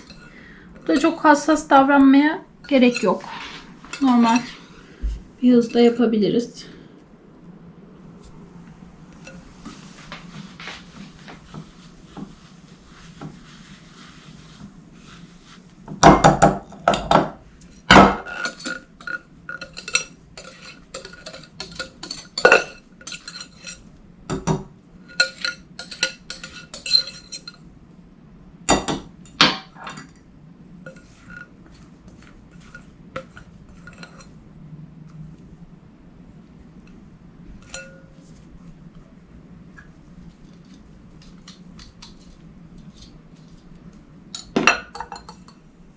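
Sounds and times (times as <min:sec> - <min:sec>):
utensil clinking against bowl: 0:18.0 - 0:27.6, 0:37.6 - 0:38.3, 0:44.3 - 0:45.6.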